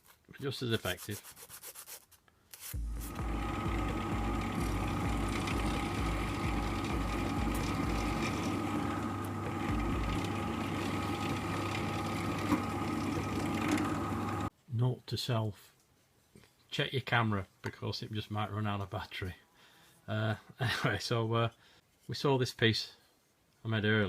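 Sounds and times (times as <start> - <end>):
low pulsing throb: 2.8 - 12.0
motor humming: 2.8 - 14.5.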